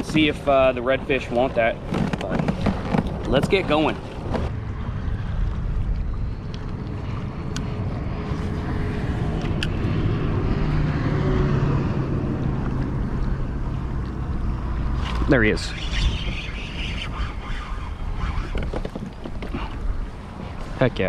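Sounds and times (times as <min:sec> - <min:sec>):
wind rumbling on microphone: 0:00.0 - 0:21.0
water noise: 0:02.6 - 0:21.0.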